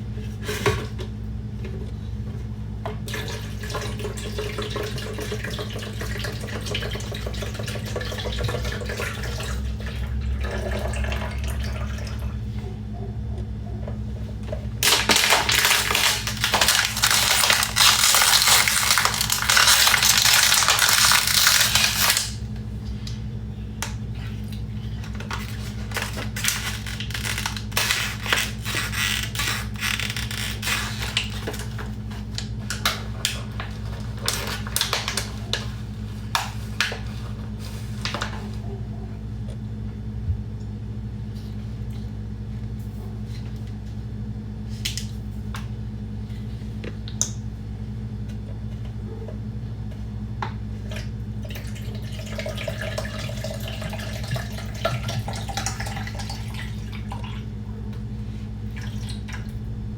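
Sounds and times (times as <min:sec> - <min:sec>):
low steady hum: 0:00.0 - 0:59.9
plastic bottles crinkling: 0:14.5 - 0:22.4, 0:25.0 - 0:38.4, 0:52.4 - 0:56.8.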